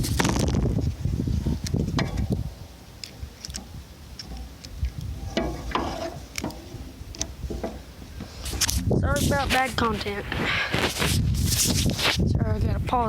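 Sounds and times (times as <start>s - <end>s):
phone handling rumble and knocks: 5.1s - 7.9s.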